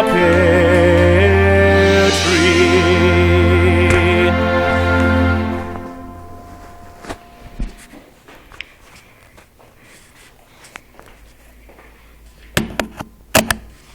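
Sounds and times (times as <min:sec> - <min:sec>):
music note: 0:00.0 - 0:08.2.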